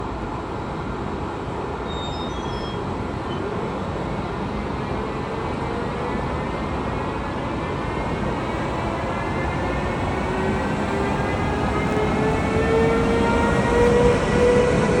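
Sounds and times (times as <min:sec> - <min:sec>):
train rumbling: 0:00.0 - 0:15.0.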